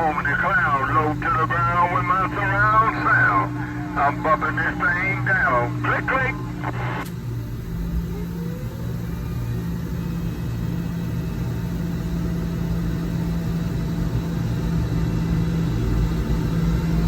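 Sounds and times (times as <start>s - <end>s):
vehicle engine humming: 0.0s - 9.5s.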